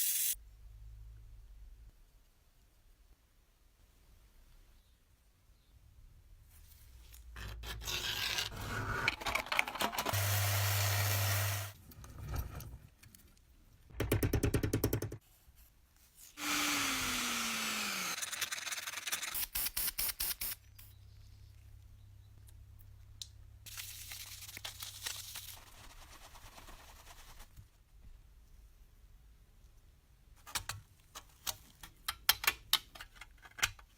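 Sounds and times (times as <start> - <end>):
scraping and rubbing on toy: 6.6 - 10.2.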